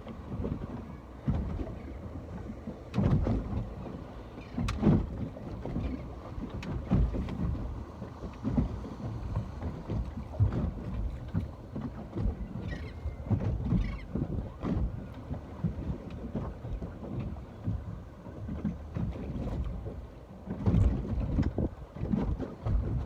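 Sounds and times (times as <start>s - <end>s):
water sloshing and lapping: 0.0s - 23.0s
wind rumbling on microphone: 0.0s - 23.0s.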